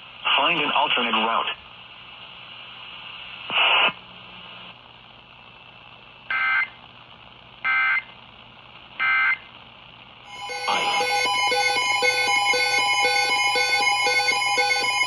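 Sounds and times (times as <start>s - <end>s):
radio hiss: 0.0s - 4.9s, 10.3s - 11.8s
two-tone data bursts: 10.3s - 15.0s.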